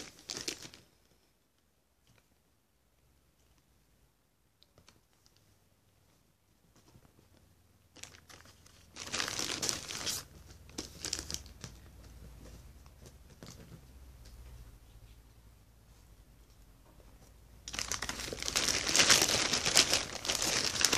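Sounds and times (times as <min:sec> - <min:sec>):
packaging crinkling: 0:00.0 - 0:00.8, 0:08.0 - 0:12.2, 0:17.6 - 0:20.9.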